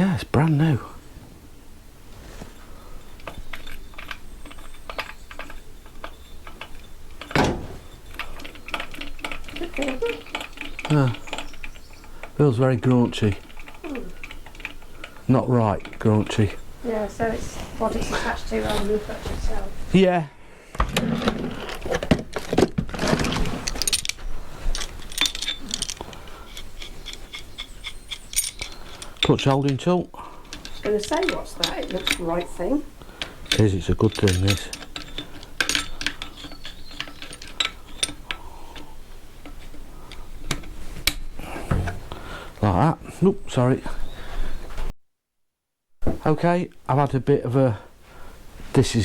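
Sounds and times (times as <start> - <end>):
metal tools clinking: 2.5 - 17.2, 21.2 - 42.1
metal parts clicking and rattling: 3.0 - 16.7, 20.9 - 42.1
loud metal knock: 7.3 - 7.9
metallic rings: 23.6 - 29.8, 30.4 - 38.8.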